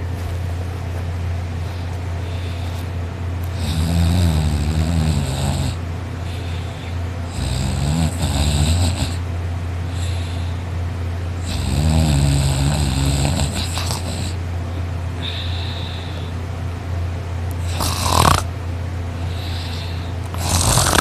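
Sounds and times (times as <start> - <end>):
steady low hum: 0.0 - 21.0
man snoring loudly: 3.5 - 5.8, 7.3 - 9.2, 11.4 - 14.4, 17.6 - 18.5, 19.3 - 21.0.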